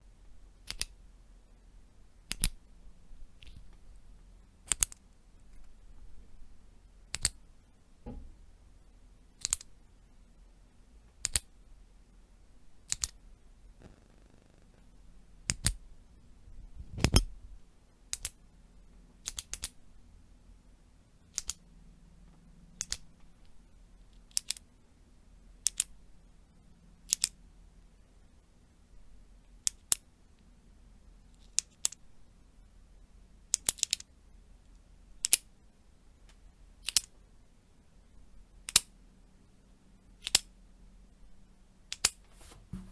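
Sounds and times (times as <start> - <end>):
retractable pen clicking: 0.6 - 0.9, 2.3 - 2.6, 4.7 - 5.0, 7.1 - 7.4, 9.4 - 9.7, 12.8 - 13.2, 18.1 - 18.4, 19.2 - 19.8, 21.3 - 21.6, 22.8 - 23.1, 24.3 - 24.6, 25.6 - 25.9, 27.1 - 27.4, 31.4 - 32.0, 33.5 - 34.1, 35.2 - 35.5, 36.8 - 37.1, 38.6 - 38.9, 40.2 - 40.5.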